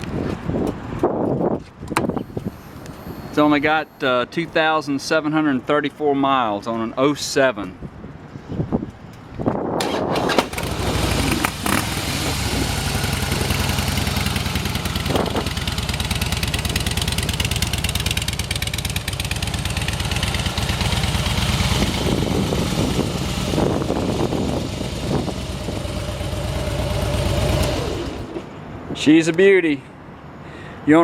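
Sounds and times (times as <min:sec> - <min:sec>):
motorcycle engine starting and idling: 0:09.8 - 0:28.5.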